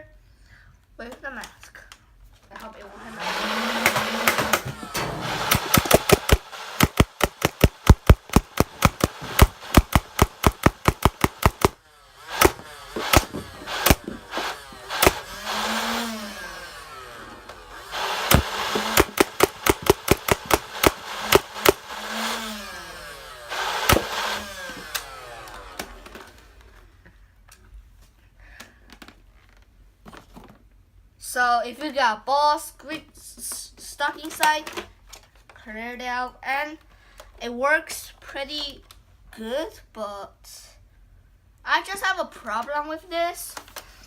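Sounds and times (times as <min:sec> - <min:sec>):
flywheel motor whirring: 0:03.1 - 0:26.5
toy blaster firing shots: 0:03.2 - 0:17.0, 0:17.9 - 0:25.9.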